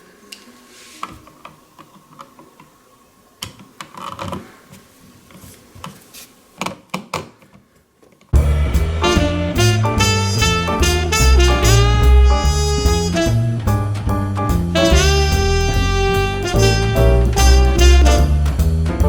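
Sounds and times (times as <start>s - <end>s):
loud music: 8.4s - 19.0s.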